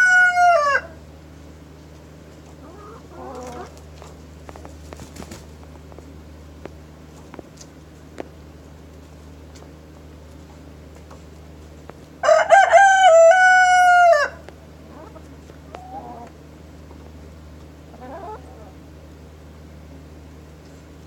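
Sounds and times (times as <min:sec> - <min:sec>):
rooster crowing: 0:00.0 - 0:01.0, 0:12.2 - 0:14.5
faint chicken calls: 0:00.0 - 0:01.1, 0:02.5 - 0:03.9, 0:12.2 - 0:19.0
steady low hum: 0:00.0 - 0:21.0.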